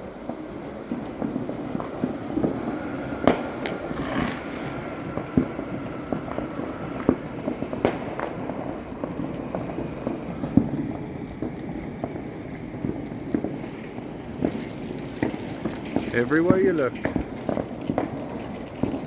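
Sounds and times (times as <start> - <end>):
fireworks and firecrackers banging: 0.0 - 19.0.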